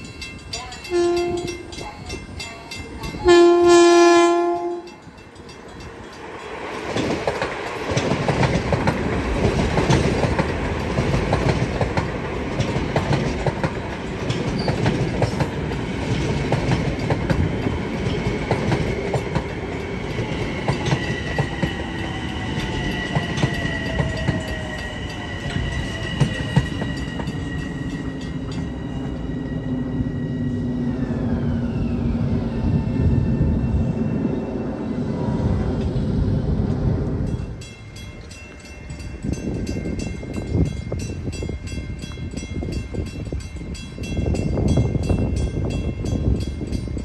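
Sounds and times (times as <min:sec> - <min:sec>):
train horn: 0:00.8 - 0:01.8, 0:03.2 - 0:05.0
train wheels clattering on rails: 0:04.4 - 0:31.9.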